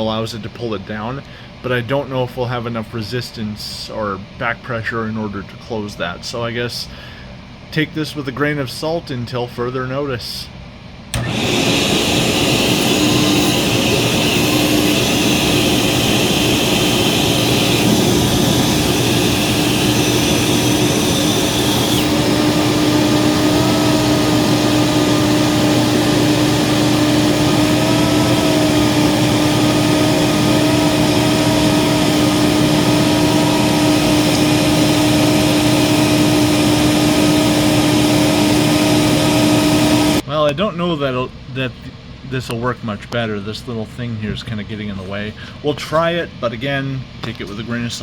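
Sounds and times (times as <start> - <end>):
vacuum cleaner running: 11.1 - 40.3.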